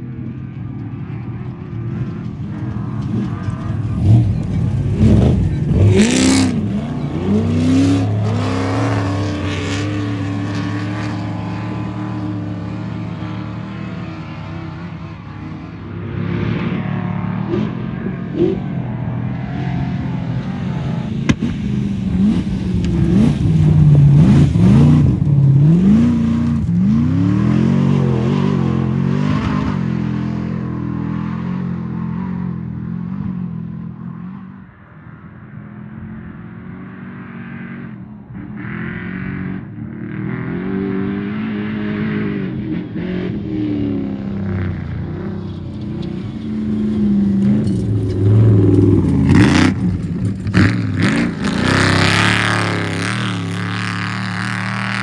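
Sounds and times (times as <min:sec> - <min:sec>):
truck engine revving hard: 0:03.1 - 0:14.9, 0:20.9 - 0:30.5, 0:46.5 - 0:55.0.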